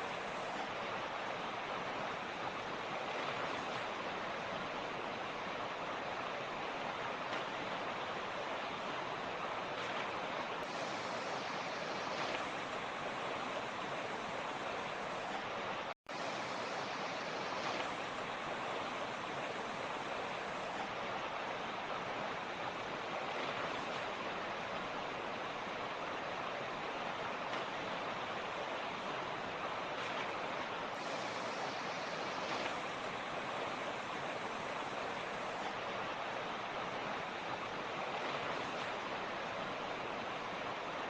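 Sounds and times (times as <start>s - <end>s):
creek rushing over rocks: 0.0s - 41.0s.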